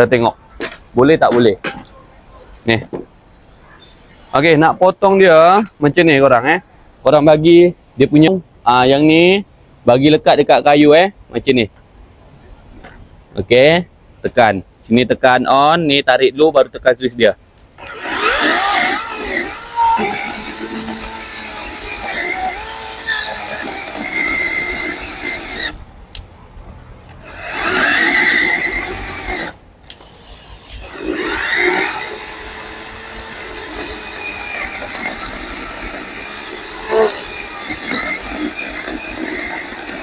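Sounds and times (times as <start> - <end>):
chainsaw cutting log: 5.2 - 5.7, 17.8 - 25.8, 27.1 - 29.6, 30.8 - 40.0.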